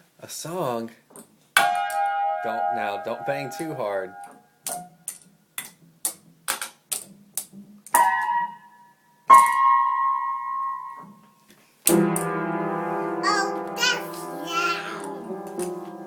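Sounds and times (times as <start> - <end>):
low piano keys banged together: 1.6 - 5.0, 9.3 - 11.2, 11.9 - 16.0
child playing piano: 8.0 - 11.2, 11.9 - 16.0.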